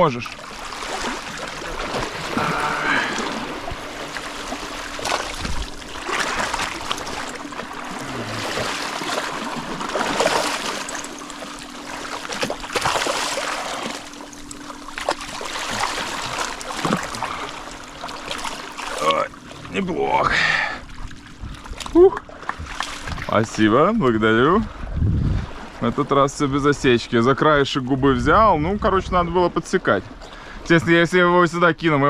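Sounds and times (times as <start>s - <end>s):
sea water splashing: 0.0s - 20.0s, 20.8s - 23.4s.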